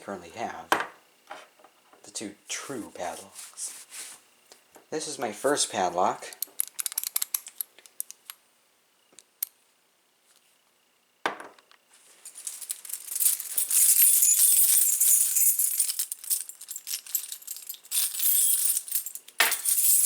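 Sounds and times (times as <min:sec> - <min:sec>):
keys and padlock jingling: 0:06.5 - 0:08.2, 0:12.3 - 0:20.0.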